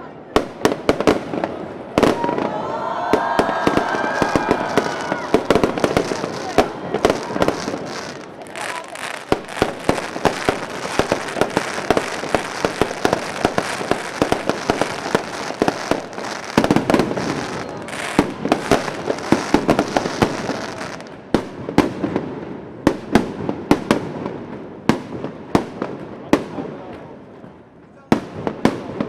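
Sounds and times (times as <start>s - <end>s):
fireworks bangs: 0.3s - 29.0s
fireworks crackle: 0.4s - 22.3s.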